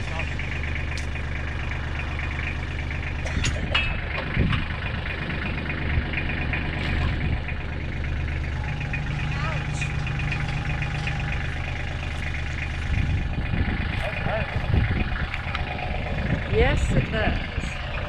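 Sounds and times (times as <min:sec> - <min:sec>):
machine engine running: 0:00.0 - 0:18.0
short knocks and clanks: 0:03.2 - 0:04.8.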